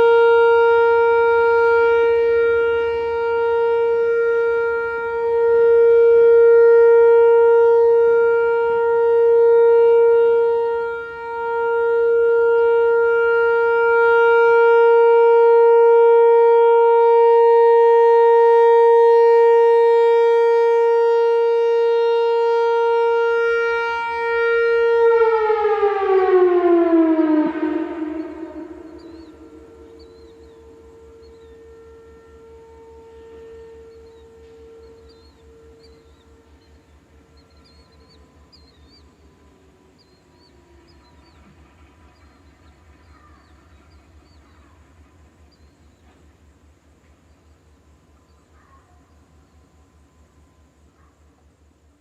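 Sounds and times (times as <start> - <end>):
outdoor warning siren: 0.0 - 52.0.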